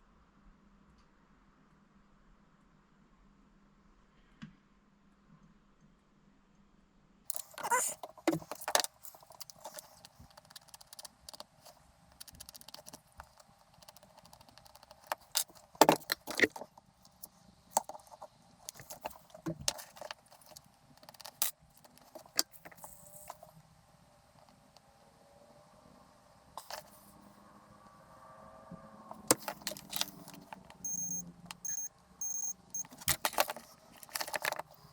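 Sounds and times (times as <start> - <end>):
small parts and tools rattling: 7.3 - 23.5, 29.1 - 34.9.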